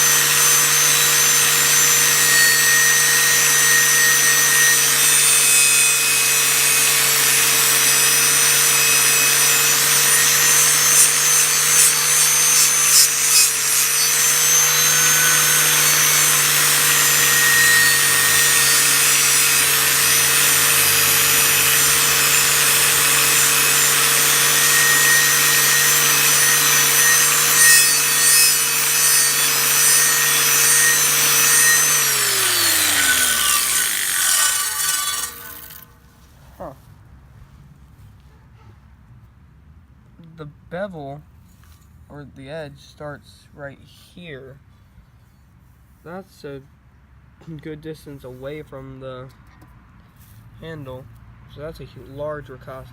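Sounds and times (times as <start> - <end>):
power tool motor humming: 0.0 - 35.8
wire wheel scouring metal: 0.0 - 35.9.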